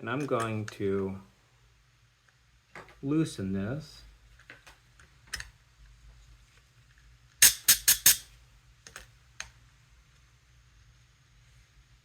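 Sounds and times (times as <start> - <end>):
sharp loud air bursts: 7.4 - 8.3.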